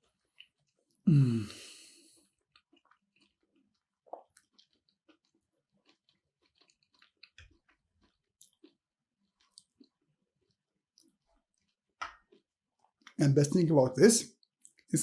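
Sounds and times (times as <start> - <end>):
close-up chewing: 2.2 - 13.2.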